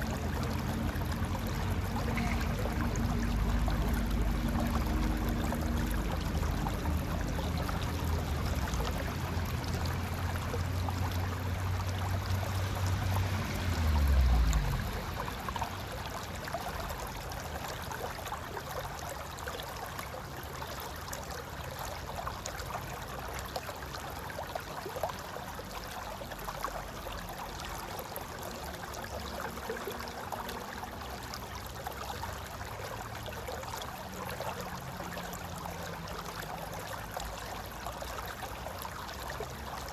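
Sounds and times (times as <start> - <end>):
river flowing over rocks: 0.0 - 39.9.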